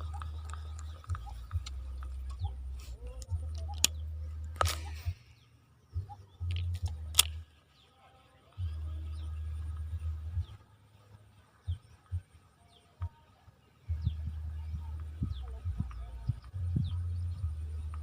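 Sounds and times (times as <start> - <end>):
sharp clicks: 0.0 - 5.3, 6.4 - 7.6
deep low rumble: 0.0 - 7.4, 8.6 - 10.6, 13.9 - 18.0
faint bird chirps: 0.0 - 18.0.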